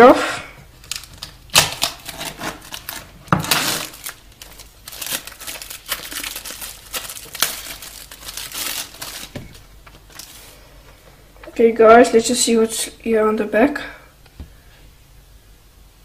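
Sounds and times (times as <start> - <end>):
plastic wrap crinkling: 0.7 - 10.6.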